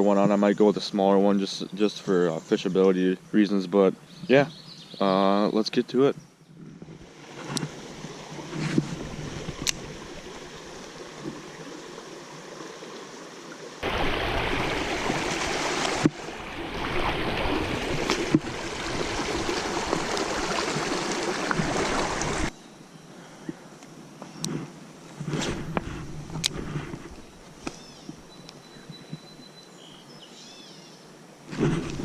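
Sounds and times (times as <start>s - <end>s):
creek water rushing: 7.0s - 22.6s.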